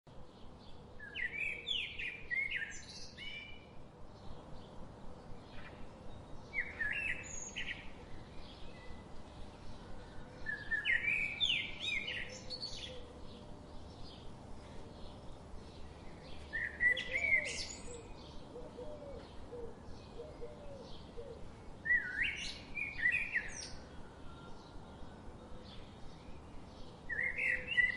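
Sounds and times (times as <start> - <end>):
faint calls of other birds: 0.1 - 27.9
songbird singing whistled phrases: 6.5 - 7.8, 10.4 - 13.0, 16.4 - 18.2, 21.8 - 23.8, 27.1 - 27.9.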